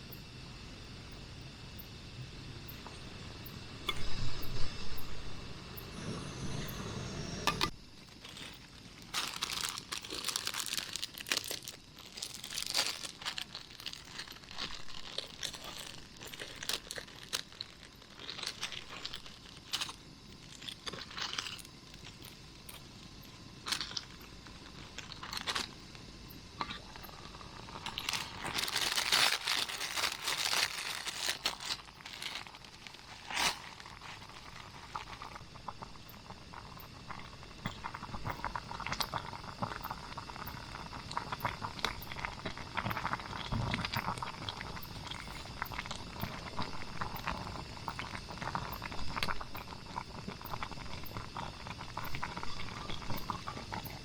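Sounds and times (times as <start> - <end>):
crinkling and rustling: 8.0 - 25.9, 26.7 - 35.4.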